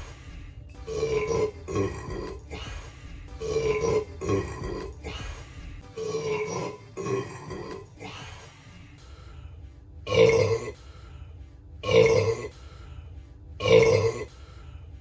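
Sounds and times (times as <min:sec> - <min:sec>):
man burping: 0:00.8 - 0:02.7, 0:03.4 - 0:05.2, 0:06.0 - 0:08.1, 0:10.1 - 0:10.8, 0:11.8 - 0:12.5, 0:13.6 - 0:14.3.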